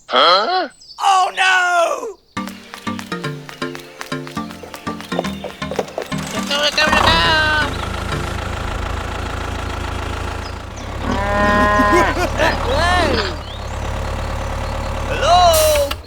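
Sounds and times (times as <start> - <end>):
low engine hum: 4.9 - 16.0
cow mooing: 11.0 - 13.4.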